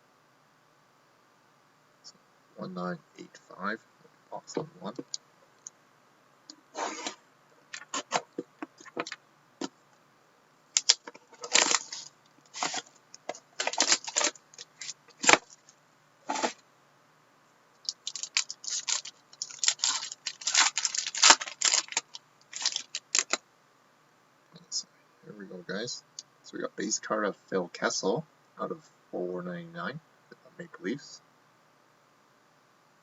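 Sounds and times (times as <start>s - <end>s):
plastic wrap crinkling and tearing: 7.8s - 9.2s, 10.8s - 15.7s, 17.9s - 23.4s.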